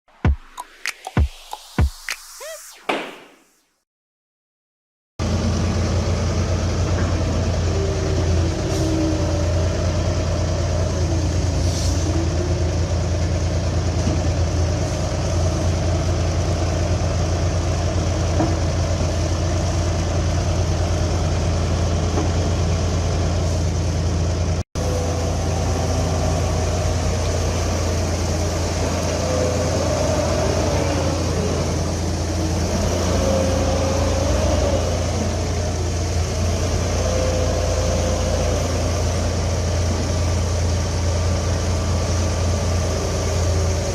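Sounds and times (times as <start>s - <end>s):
diesel engine running: 5.2s - 43.9s.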